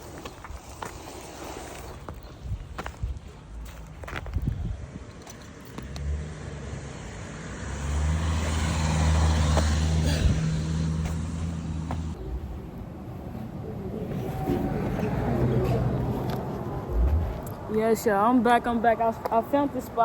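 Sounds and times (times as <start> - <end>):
road noise: 0.0 - 20.0
vehicle engine hum: 5.6 - 17.8.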